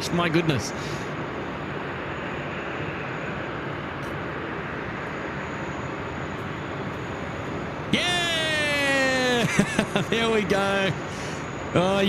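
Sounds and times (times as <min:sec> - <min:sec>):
jet aircraft engines rushing: 0:00.0 - 0:12.0.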